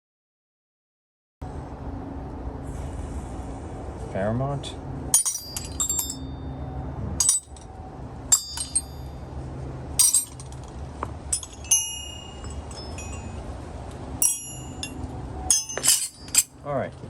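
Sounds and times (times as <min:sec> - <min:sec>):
low steady hum: 0:01.5 - 0:16.6
metal hand tools clinking: 0:05.2 - 0:06.3, 0:07.2 - 0:07.7, 0:08.3 - 0:09.1, 0:10.0 - 0:13.4, 0:14.2 - 0:16.5.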